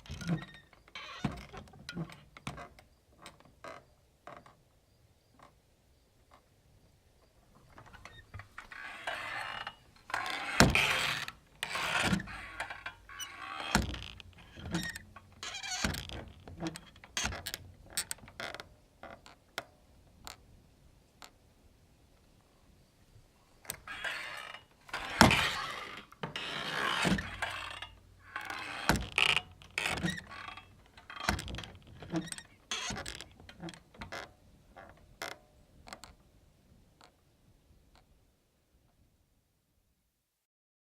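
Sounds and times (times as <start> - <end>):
wooden doors creaking on hinges: 0.0 - 4.6, 7.7 - 19.4, 23.6 - 36.2.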